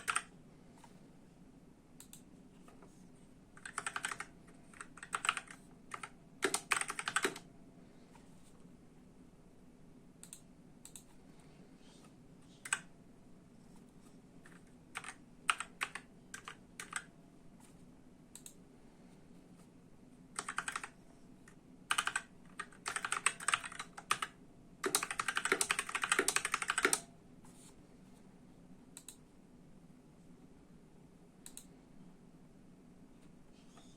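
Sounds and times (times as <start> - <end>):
mechanical keyboard typing: 0.0 - 0.3, 3.6 - 7.4, 14.4 - 17.1, 20.4 - 21.0, 21.9 - 27.1.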